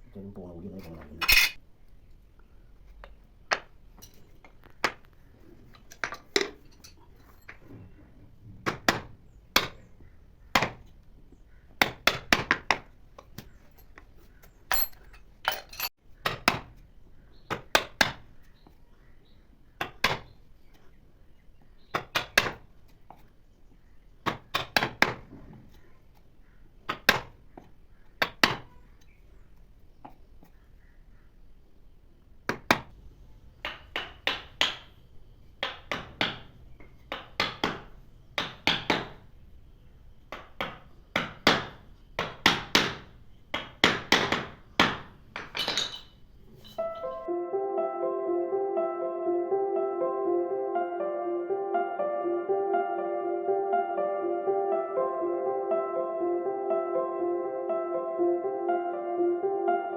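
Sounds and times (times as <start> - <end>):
hand tools tapping wood and metal: 2.9 - 7.9, 11.7 - 16.8, 19.8 - 20.9, 21.9 - 23.3, 24.2 - 26.3, 26.9 - 30.6, 33.6 - 34.9, 35.6 - 39.2, 40.3 - 47.2.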